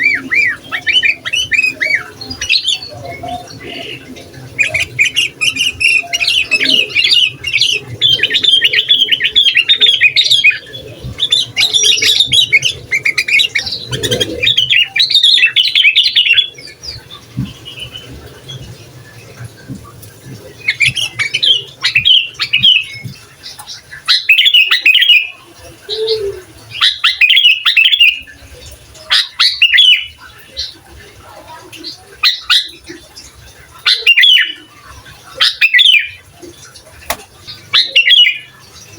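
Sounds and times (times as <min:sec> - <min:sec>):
bird singing chattering notes: 0:00.0 - 0:18.8, 0:37.1 - 0:38.9.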